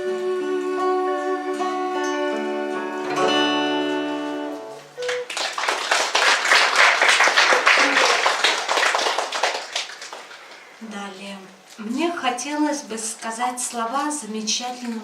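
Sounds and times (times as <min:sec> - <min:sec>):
band playing chords: 0:00.0 - 0:05.3
audience applauding: 0:04.8 - 0:10.8.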